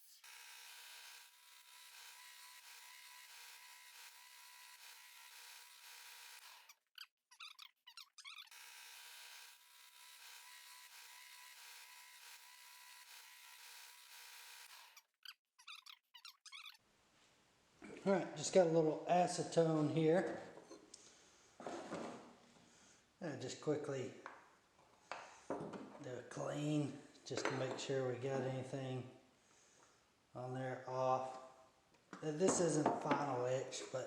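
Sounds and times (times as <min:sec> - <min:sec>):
belt grinder grinding knife blade: 0:00.0 - 0:16.8.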